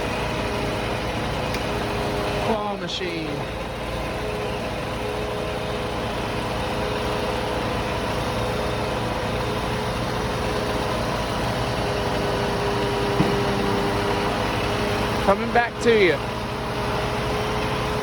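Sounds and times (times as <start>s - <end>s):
machinery engine rumble: 0.0s - 18.0s
steady whine: 10.7s - 17.6s.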